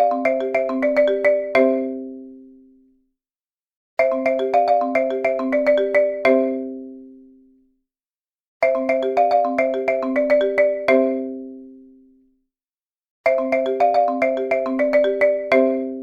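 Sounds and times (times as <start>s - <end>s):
marimba ringtone alarm: 0.0s - 2.2s, 4.0s - 6.8s, 8.6s - 11.5s, 13.3s - 16.0s.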